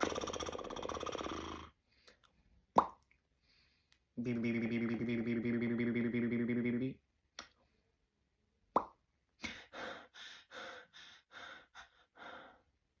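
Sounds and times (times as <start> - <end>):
mouth pop with falling pitch: 8.8 - 9.0.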